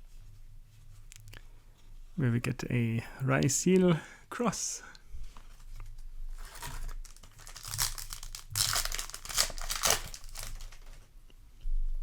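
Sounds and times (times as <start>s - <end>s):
foil wrapper crinkling and tearing: 6.3s - 11.0s.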